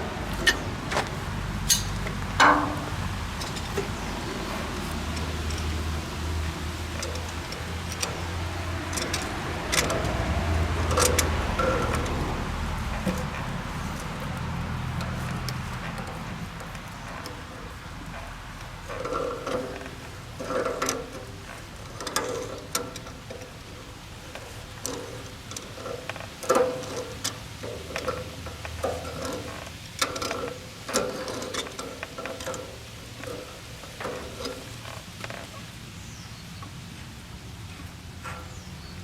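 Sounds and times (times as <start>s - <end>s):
metal tools clanking: 0.3s - 23.6s.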